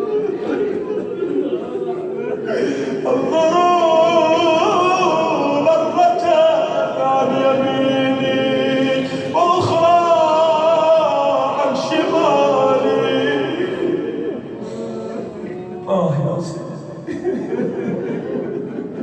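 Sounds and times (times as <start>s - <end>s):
man chanting: 2.9s - 16.9s.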